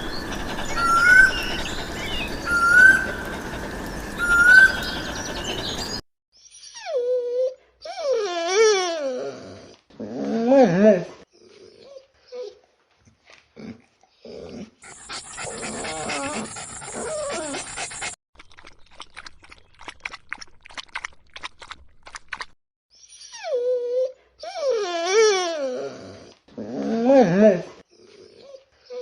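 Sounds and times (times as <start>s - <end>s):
rough noisy animal sound: 0.0s - 6.0s
wavering dog-like whining calls: 0.0s - 6.0s, 14.8s - 18.2s.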